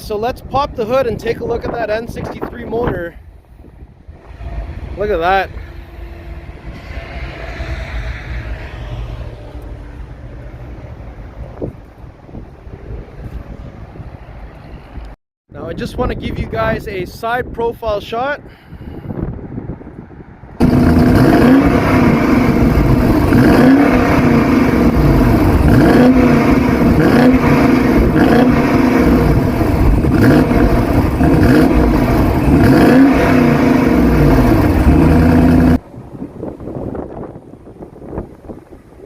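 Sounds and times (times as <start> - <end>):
car engine revving: 4.0 - 11.8, 20.6 - 35.8.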